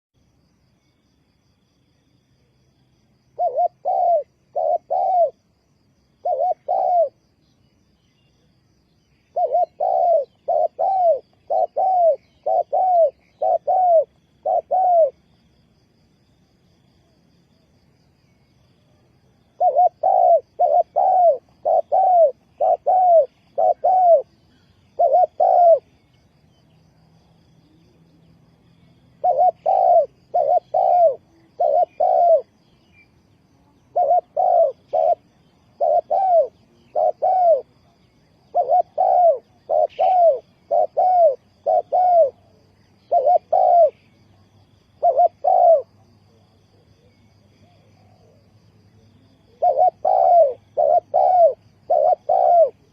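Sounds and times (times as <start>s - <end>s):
dove cooing: 3.4s - 5.5s, 6.1s - 7.2s, 9.2s - 15.3s, 19.2s - 26.3s, 29.0s - 33.1s, 33.7s - 52.9s.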